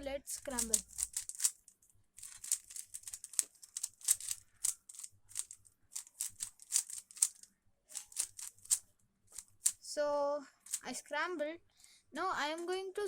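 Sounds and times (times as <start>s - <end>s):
puzzle cube twisting clicks: 0.4s - 8.8s, 9.4s - 9.8s, 10.6s - 10.8s.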